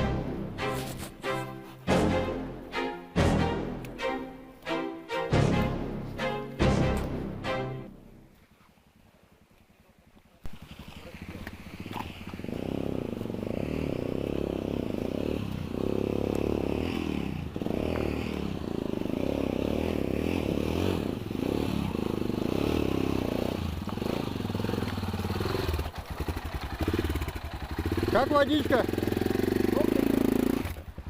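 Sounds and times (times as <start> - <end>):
motorcycle engine revving: 10.4 - 31.0.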